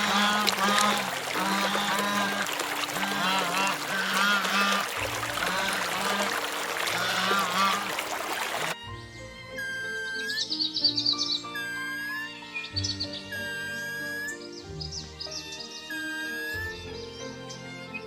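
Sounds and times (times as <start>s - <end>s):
background music with held notes: 0.0s - 18.0s.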